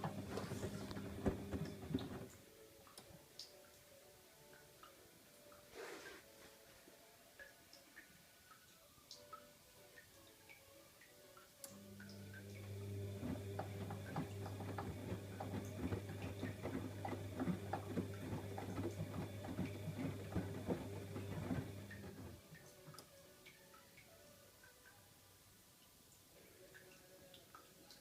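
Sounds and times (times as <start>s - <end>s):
tumbling load clicking and knocking: 0.0s - 2.3s, 13.1s - 22.4s
washing machine motor hum: 0.0s - 2.4s, 11.7s - 22.4s.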